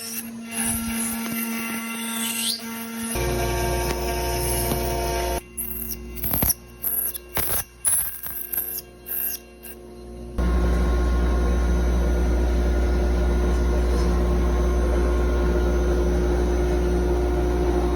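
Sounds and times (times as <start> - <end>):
loud steady machine noise: 3.1 - 5.6, 9.6 - 17.9
low hum: 3.2 - 17.9.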